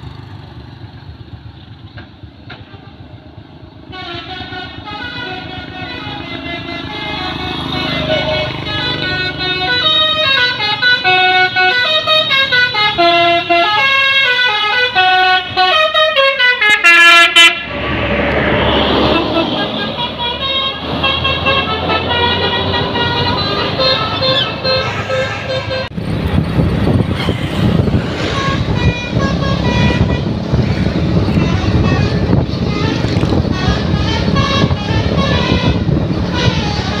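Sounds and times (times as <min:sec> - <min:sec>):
musical air horn melody: 0:03.9 - 0:26.0, 0:28.2 - 0:37.0
loud noisy rush: 0:17.3 - 0:21.1, 0:22.8 - 0:37.0.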